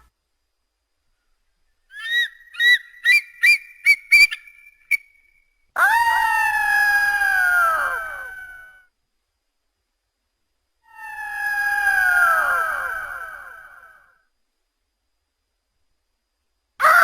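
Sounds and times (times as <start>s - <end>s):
creature chirping calls: 1.9s - 4.5s.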